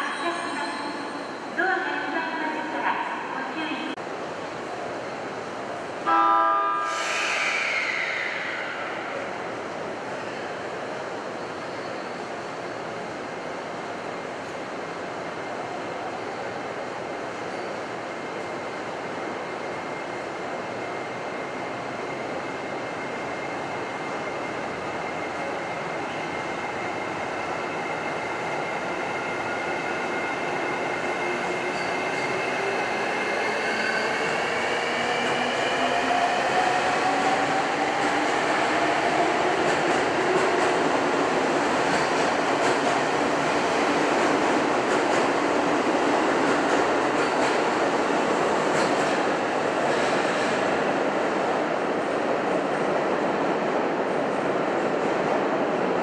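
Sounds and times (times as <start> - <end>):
train wheels rolling on rails: 16.8 - 56.0.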